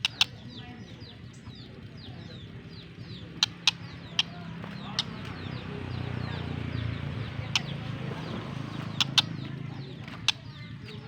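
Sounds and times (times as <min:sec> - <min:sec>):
sharp clicks: 0:00.0 - 0:00.4, 0:03.3 - 0:05.5, 0:07.2 - 0:07.9, 0:08.7 - 0:10.5
birds chirping and clucking: 0:00.0 - 0:11.0.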